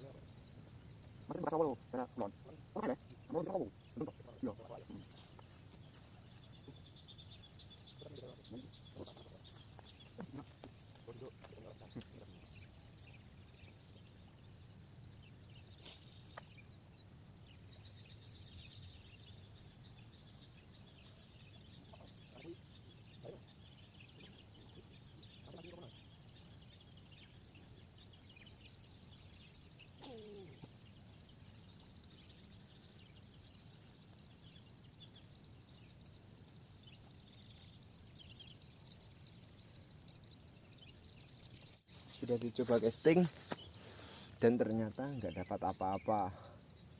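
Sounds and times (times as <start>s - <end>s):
background hiss: 0.0s - 46.9s
faint bird chirps: 0.0s - 46.9s
animal calls: 8.0s - 12.5s.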